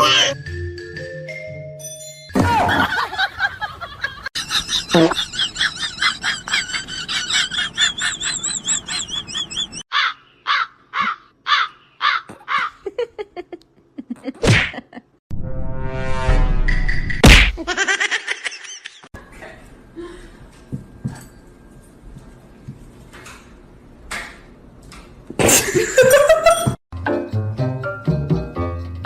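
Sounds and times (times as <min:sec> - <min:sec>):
bird warbling chirps: 0:08.2 - 0:12.2.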